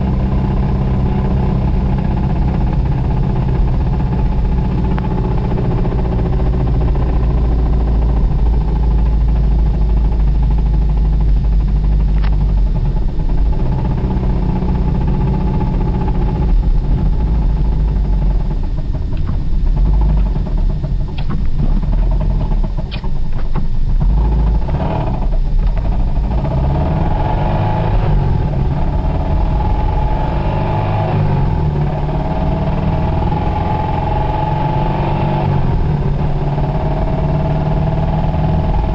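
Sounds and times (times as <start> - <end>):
car engine running: 0.0 - 38.9
engine knocking: 0.0 - 38.9.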